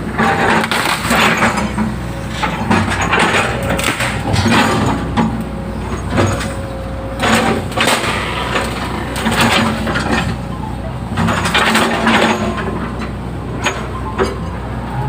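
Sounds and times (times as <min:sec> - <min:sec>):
excavator engine running: 0:00.0 - 0:15.0
wood and roots cracking: 0:00.2 - 0:05.2.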